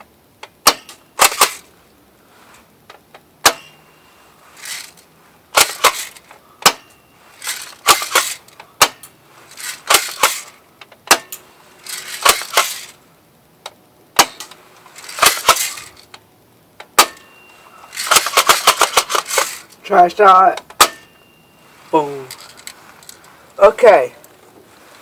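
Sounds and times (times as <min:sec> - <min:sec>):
airsoft shotgun shots: 0:00.6 - 0:01.6, 0:03.4 - 0:03.8, 0:05.6 - 0:06.9, 0:07.8 - 0:09.0, 0:09.8 - 0:10.5, 0:12.1 - 0:12.8, 0:14.2 - 0:14.5, 0:15.2 - 0:15.9, 0:17.0 - 0:17.3, 0:18.0 - 0:19.6, 0:20.8 - 0:21.1
pump action rattling: 0:04.6 - 0:13.0, 0:14.2 - 0:16.1, 0:17.0 - 0:19.8.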